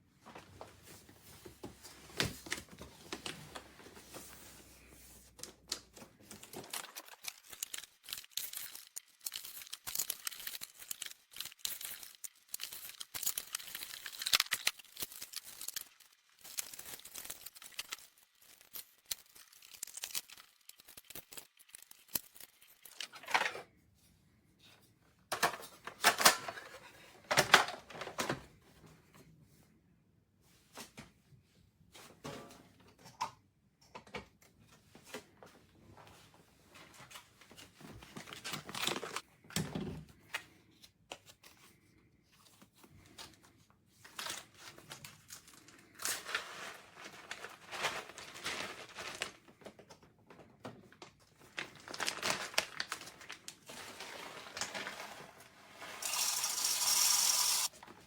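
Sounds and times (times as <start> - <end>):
objects clicking and crinkling: 5.3 - 23.8, 37.0 - 39.6, 42.8 - 55.2.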